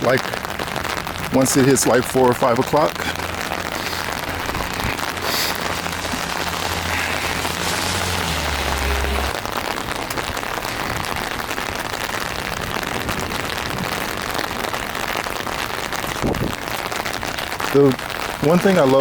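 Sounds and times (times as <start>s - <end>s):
steady rain hiss: 0.0s - 19.0s
low hum: 3.2s - 9.7s.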